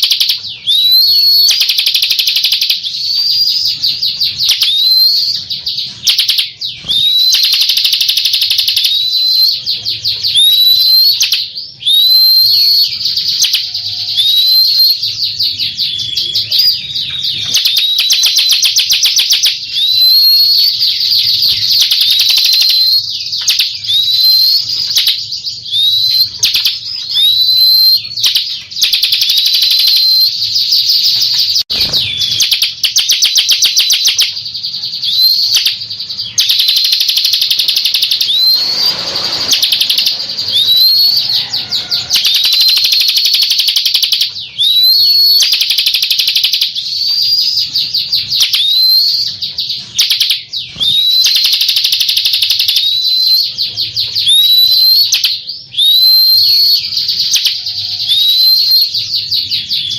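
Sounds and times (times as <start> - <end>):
bird rattling trill: 0.0 - 9.3, 17.4 - 30.2, 35.4 - 53.2.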